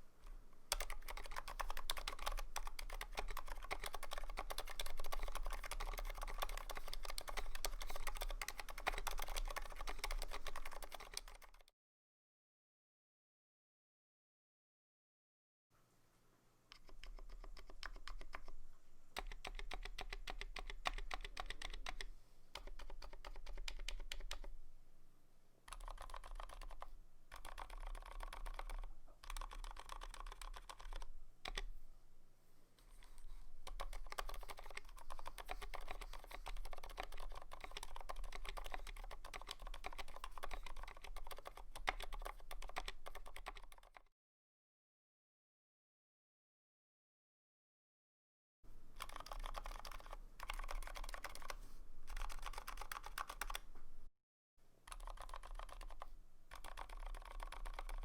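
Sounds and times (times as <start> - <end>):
mechanical keyboard typing: 0.7 - 11.7, 16.7 - 18.5, 19.2 - 24.5, 25.7 - 31.7, 33.0 - 44.1, 49.0 - 53.7, 54.9 - 58.0.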